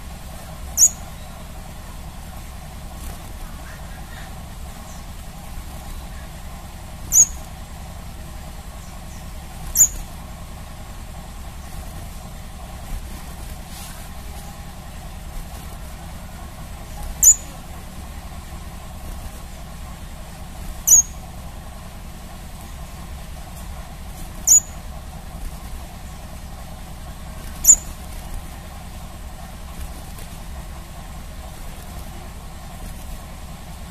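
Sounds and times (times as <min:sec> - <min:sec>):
low background hum: 0:00.0 - 0:33.9
bird high-pitched calls: 0:00.4 - 0:01.8, 0:03.4 - 0:06.4, 0:07.0 - 0:07.6, 0:08.8 - 0:10.2, 0:16.8 - 0:17.6, 0:20.8 - 0:21.3, 0:24.4 - 0:24.8, 0:27.5 - 0:28.0.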